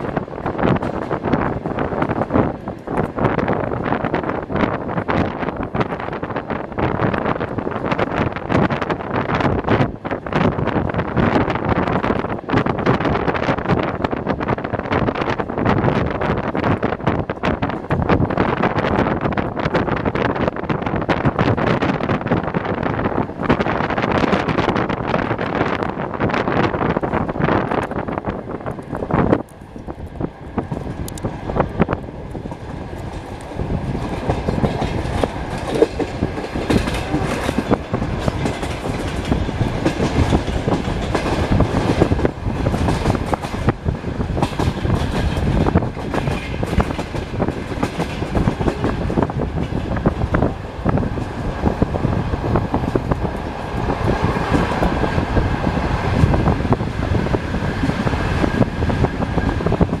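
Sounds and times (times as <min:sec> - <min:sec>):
train carriage rumbling: 0:00.0 - 1:00.0
wheels clacking over rail joints: 0:26.9 - 1:00.0.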